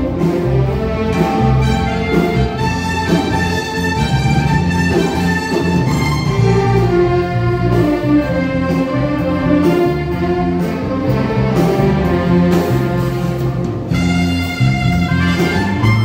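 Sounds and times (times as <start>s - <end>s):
orchestral string melody: 0.0s - 16.0s
steady bass notes: 0.0s - 16.0s.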